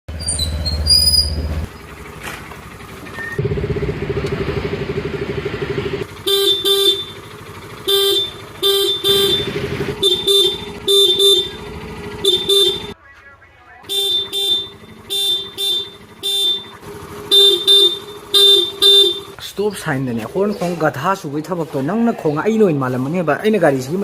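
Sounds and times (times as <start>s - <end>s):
vehicle engine idling: 0.1s - 24.0s
car horn honking: 6.0s - 13.0s, 13.7s - 19.4s.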